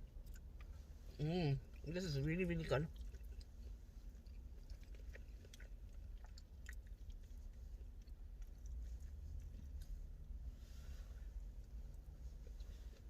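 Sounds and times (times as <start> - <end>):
chewing food: 0.0 - 1.0, 1.6 - 10.3.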